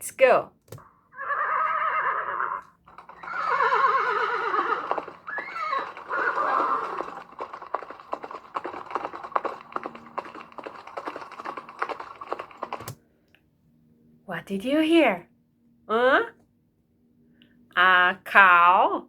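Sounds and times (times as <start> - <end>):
horse whinnying: 0.8 - 13.0
hooves clip-clopping: 2.8 - 13.0.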